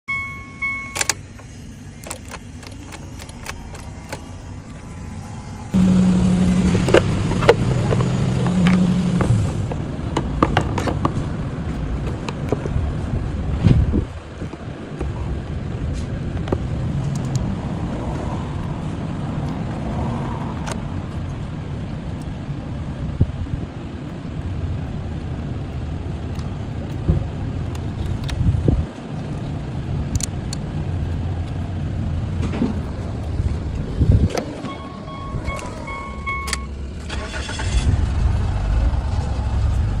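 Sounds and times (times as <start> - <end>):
electronic beeps: 0.1 - 1.2, 34.6 - 36.8
car engine idling: 0.1 - 40.0.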